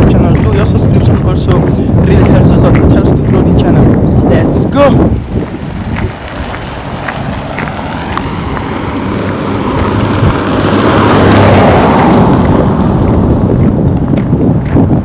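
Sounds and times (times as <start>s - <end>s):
vehicle road noise: 0.0s - 15.0s
wind rumbling on microphone: 0.0s - 15.0s.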